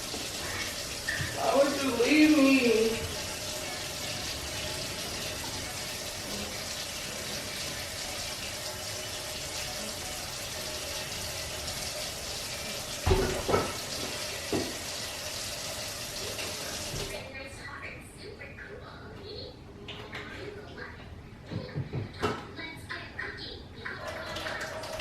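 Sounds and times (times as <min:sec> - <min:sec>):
tap water running into sink: 0:00.0 - 0:17.2.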